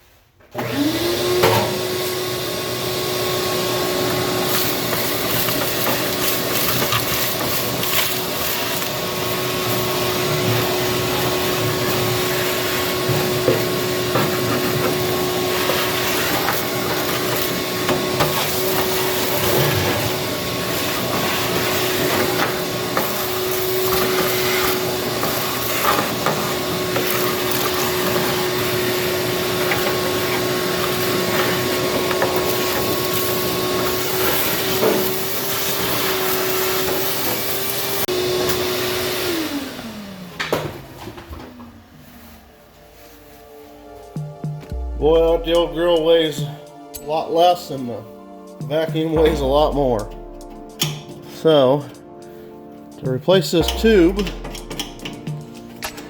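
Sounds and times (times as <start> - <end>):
vacuum motor whining: 0.6 - 41.8.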